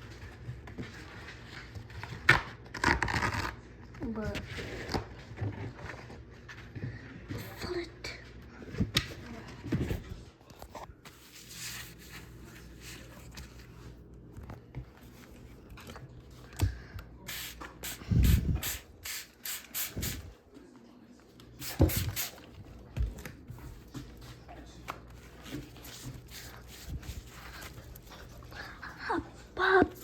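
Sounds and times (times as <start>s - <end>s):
spray bottle squirting: 17.3s - 20.3s, 21.6s - 22.4s.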